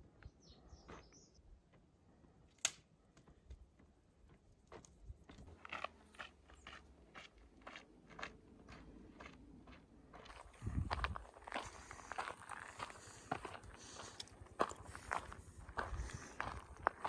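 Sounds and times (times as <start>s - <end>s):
sharp click: 2.5s - 2.9s
footsteps crunching on stones: 3.2s - 17.0s.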